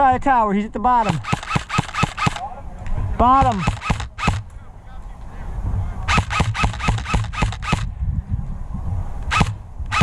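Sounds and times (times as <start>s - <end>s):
airsoft guns firing: 1.0s - 2.4s, 3.3s - 4.5s, 6.1s - 7.9s
wind rumble on microphone: 2.4s - 10.0s.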